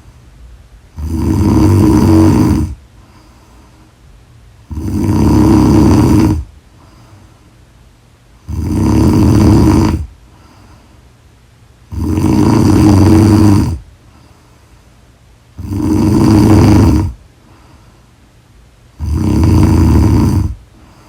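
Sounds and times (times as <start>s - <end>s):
quiet breathing: 0.0s - 21.0s
person snoring loudly: 1.0s - 2.8s, 4.7s - 6.5s, 8.4s - 10.1s, 11.9s - 13.8s, 15.6s - 17.2s, 19.0s - 20.6s.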